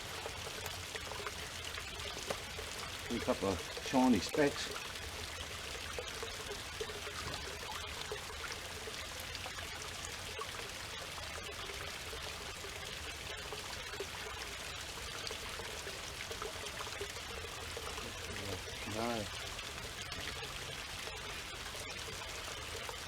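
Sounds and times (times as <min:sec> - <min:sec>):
water splashing into a pool: 0:00.0 - 0:23.0.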